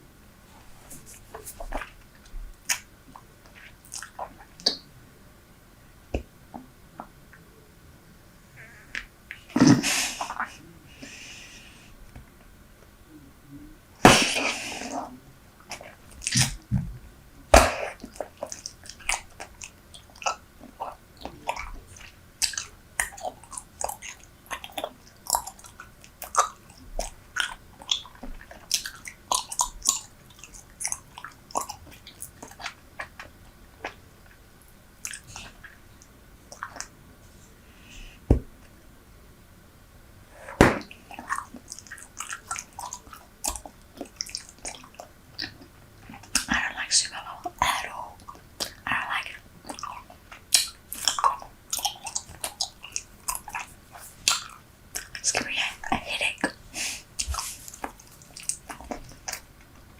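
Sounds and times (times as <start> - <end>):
wet gum chewing: 1.4 - 4.8, 17.6 - 34.4, 35.0 - 37.0, 40.6 - 59.9
gum snaps: 2.6 - 4.8, 15.7 - 16.7, 17.5 - 34.0, 35.0 - 36.9, 40.6 - 46.6, 49.6 - 55.5, 57.2 - 59.7.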